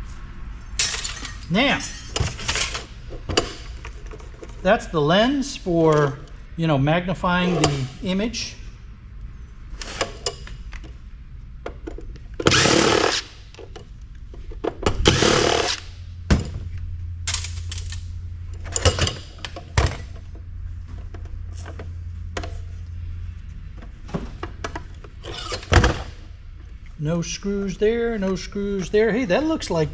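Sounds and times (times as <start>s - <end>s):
cordless power drill running: 12.5s - 13.2s, 15.1s - 15.8s.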